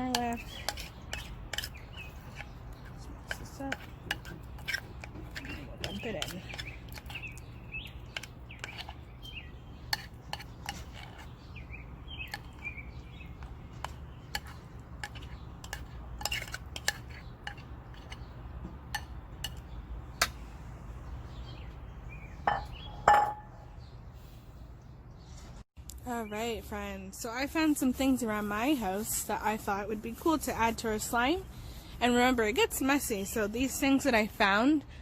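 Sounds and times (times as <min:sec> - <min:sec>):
spoon scraping a mixing bowl: 0:00.0 - 0:19.7.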